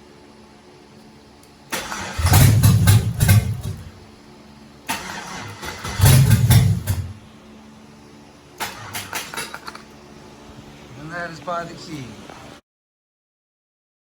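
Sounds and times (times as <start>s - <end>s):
engine starter cranking: 1.7s - 4.0s, 4.9s - 7.3s, 8.6s - 9.9s.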